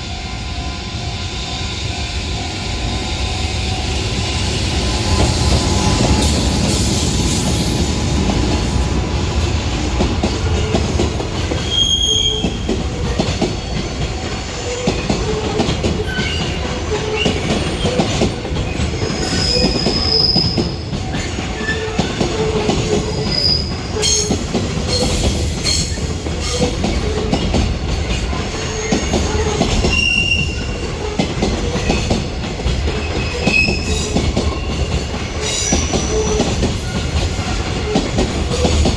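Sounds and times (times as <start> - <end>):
freight train wheels rumbling: 0.0 - 38.9
wheel squeals: 11.5 - 12.7, 14.6 - 27.8, 28.5 - 30.9, 33.0 - 38.9.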